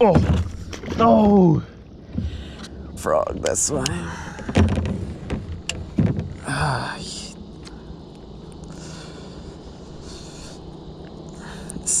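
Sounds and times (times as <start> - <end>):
sharp knocks: 4.4 - 6.5.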